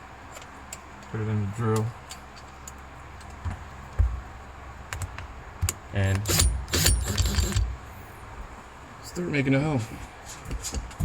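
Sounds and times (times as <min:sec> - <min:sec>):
drill chuck clicks and knocks: 0:04.9 - 0:07.7
drill chuck ratcheting clicks: 0:06.1 - 0:07.7.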